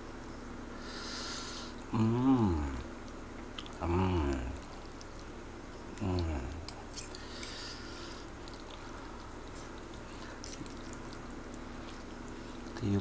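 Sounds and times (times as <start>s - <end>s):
hum falling in pitch: 1.9s - 2.9s
wet mouth clicks: 8.3s - 12.8s.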